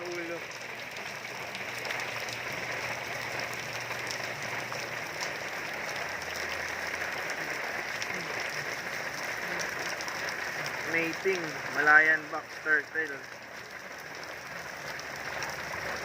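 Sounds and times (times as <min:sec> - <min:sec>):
faint raindrop ticks: 0:00.0 - 0:16.0
steady rainfall hiss: 0:00.0 - 0:16.0.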